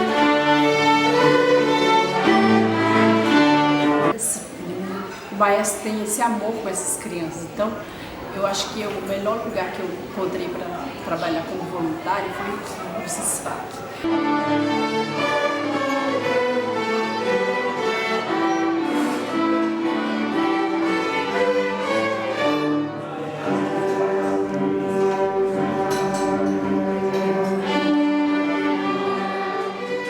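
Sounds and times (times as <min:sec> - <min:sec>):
violins: 0:00.0 - 0:04.2, 0:14.0 - 0:30.0
cellos: 0:00.0 - 0:05.6, 0:06.4 - 0:30.0.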